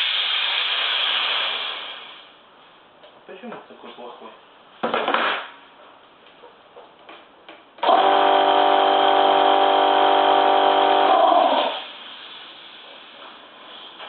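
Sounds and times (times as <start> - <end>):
air compressor running: 0.0 - 2.4, 7.8 - 13.8.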